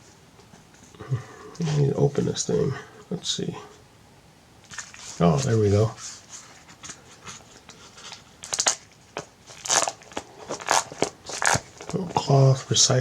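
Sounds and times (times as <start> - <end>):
packaging wrap crinkling: 4.6 - 12.8.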